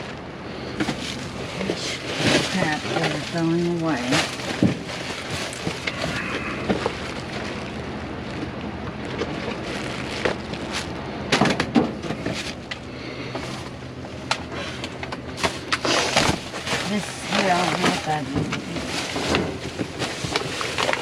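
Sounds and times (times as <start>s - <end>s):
steady low hum: 0.0s - 21.0s
items knocking in a dumpster: 10.3s - 12.6s.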